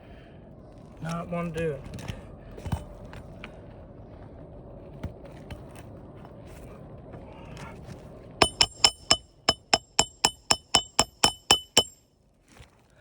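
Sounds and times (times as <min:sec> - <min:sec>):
hammer striking nail: 0:08.4 - 0:12.0.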